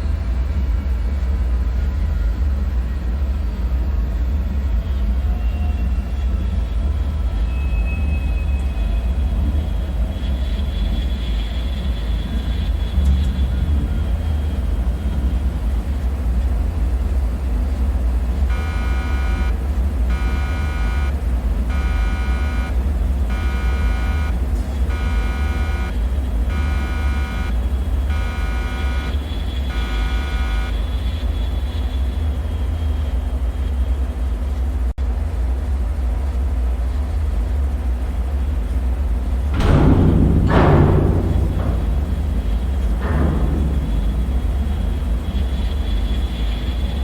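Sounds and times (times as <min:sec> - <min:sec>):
electronic alarm beeping: 0:21.7 - 0:29.1
sudden bang: 0:23.4 - 0:30.7, 0:39.5 - 0:47.0
deep droning rumble: 0:39.3 - 0:47.0.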